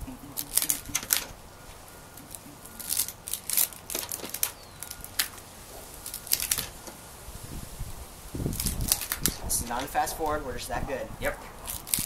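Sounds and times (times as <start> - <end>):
rubber bands snapping: 2.2 - 5.4, 6.0 - 6.8, 8.5 - 9.9, 11.7 - 12.0.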